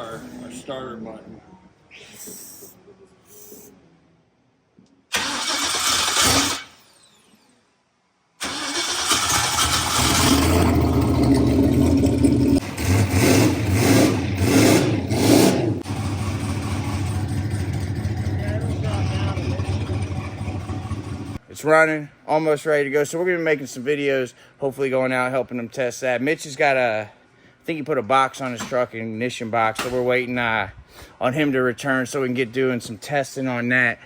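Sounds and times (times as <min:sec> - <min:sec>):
starter motor cranking: 0:05.1 - 0:07.4, 0:08.4 - 0:13.1
race car engine revving and idling: 0:09.2 - 0:21.4.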